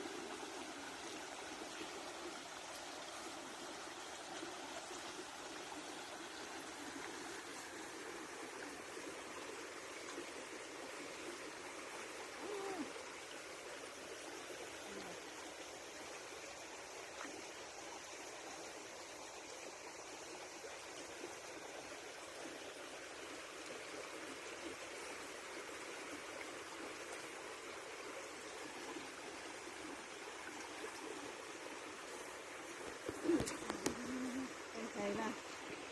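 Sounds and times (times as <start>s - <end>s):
low animal call: 12.4s - 13.0s, 33.1s - 34.9s.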